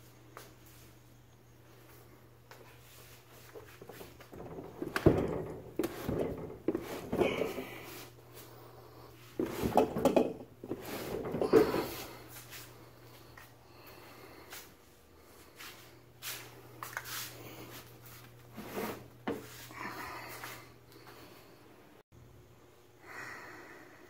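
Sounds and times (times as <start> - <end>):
scraping: 3.3 - 12.7
bumps and knocks: 3.6 - 7.9, 9.4 - 12.1.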